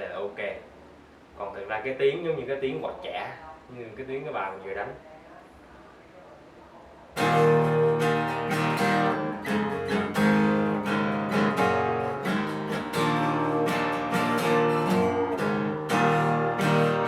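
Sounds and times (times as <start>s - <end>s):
acoustic guitar strummed chords: 7.2s - 17.0s.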